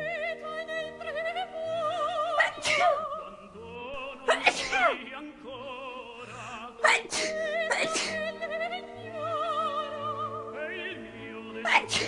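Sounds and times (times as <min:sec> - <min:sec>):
operatic singing: 0:00.0 - 0:12.0
person sneezing: 0:02.4 - 0:03.0, 0:04.3 - 0:05.0, 0:06.8 - 0:08.3, 0:11.7 - 0:12.0.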